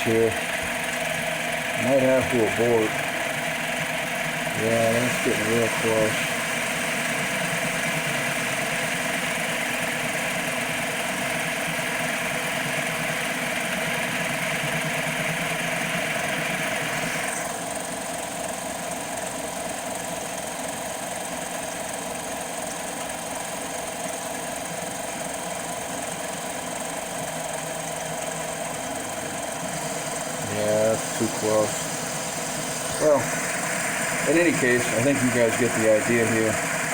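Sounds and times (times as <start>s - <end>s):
cutting tool hiss: 0.0s - 17.5s, 28.7s - 36.9s
lathe motor hum: 0.0s - 36.9s.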